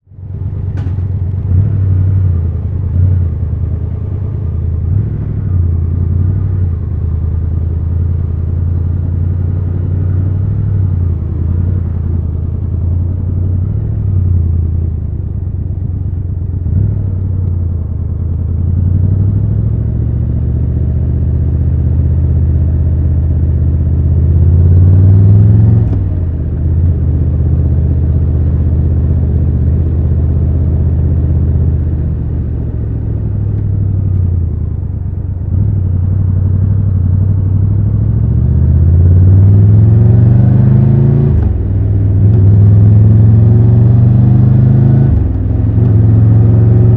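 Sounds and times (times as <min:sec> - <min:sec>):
motorcycle engine running: 0:00.1 - 0:46.9.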